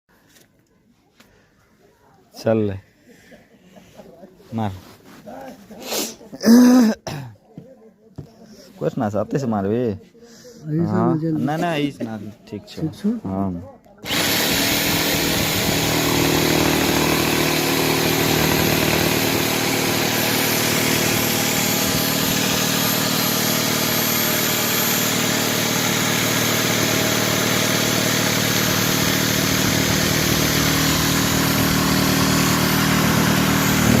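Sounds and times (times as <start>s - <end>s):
motor-driven machine running: 14.0s - 34.0s.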